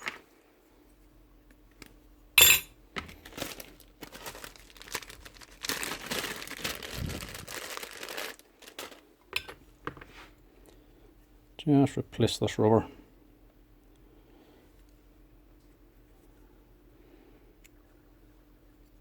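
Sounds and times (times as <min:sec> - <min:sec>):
rustling: 0:03.2 - 0:09.1.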